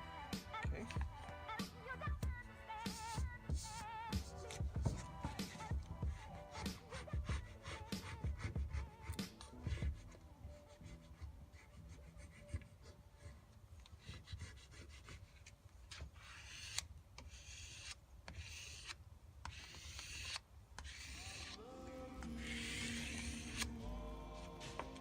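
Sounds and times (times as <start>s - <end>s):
rubbing strokes on window: 2.9s - 23.8s.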